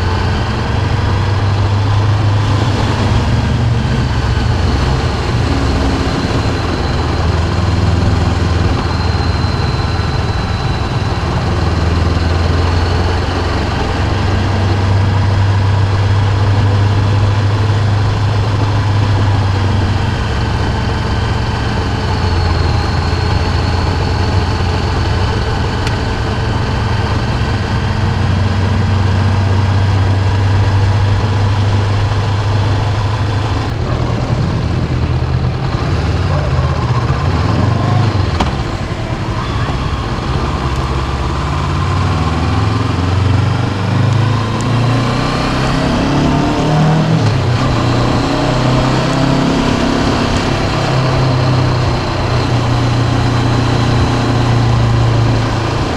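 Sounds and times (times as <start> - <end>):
motorcycle engine humming: 0.0 - 55.9.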